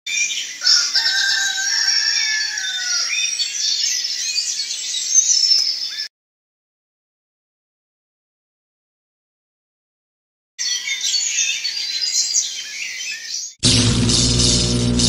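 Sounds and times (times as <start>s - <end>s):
small birds chirping: 0.1s - 6.1s, 10.6s - 13.6s
rooster crowing: 0.6s - 3.2s.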